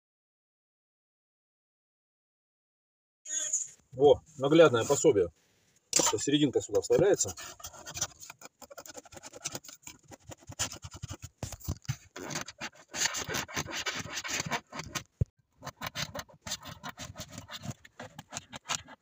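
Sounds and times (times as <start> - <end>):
plastic scraping and clicking: 6.0 - 19.0.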